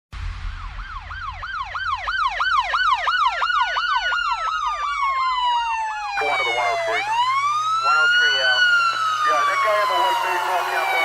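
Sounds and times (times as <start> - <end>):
low bass rumble: 0.1 - 3.0
slow gliding siren tone: 0.4 - 11.0
fast yelping siren: 0.6 - 11.0.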